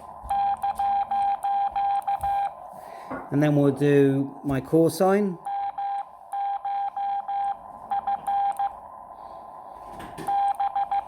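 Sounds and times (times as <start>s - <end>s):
morse code beeps: 0.3s - 2.6s, 5.4s - 8.8s, 10.2s - 11.0s.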